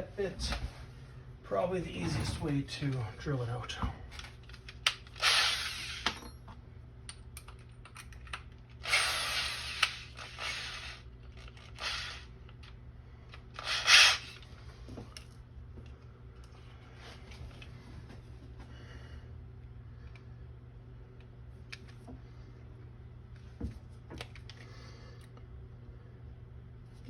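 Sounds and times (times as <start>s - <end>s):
power drill cutting plastic: 5.2s - 6.0s, 8.8s - 11.0s, 11.6s - 12.3s, 13.6s - 14.4s.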